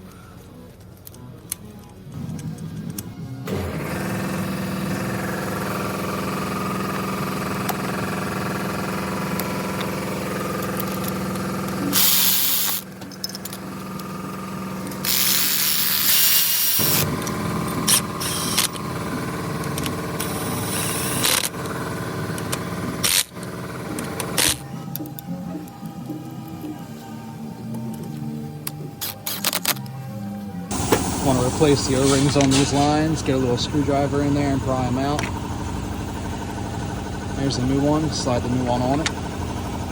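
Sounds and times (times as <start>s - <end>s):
power tool running: 3.4s - 26.8s, 30.7s - 39.9s
loud noisy bursts: 30.7s - 38.2s.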